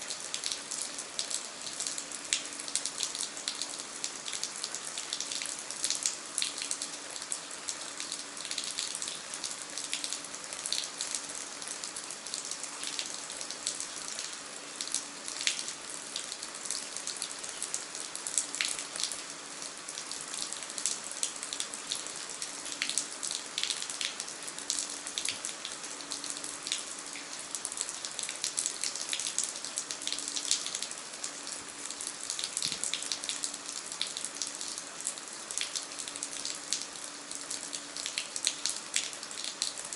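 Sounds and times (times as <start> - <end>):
rain falling: 0.0 - 39.9
raindrops splashing: 0.2 - 39.9.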